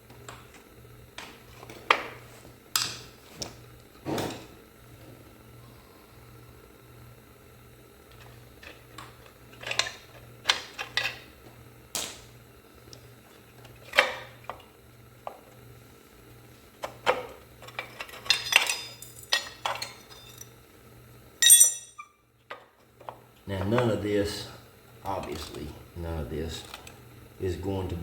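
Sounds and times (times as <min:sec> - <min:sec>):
metal tools clinking and clanking: 0:17.7 - 0:20.5, 0:21.4 - 0:22.1.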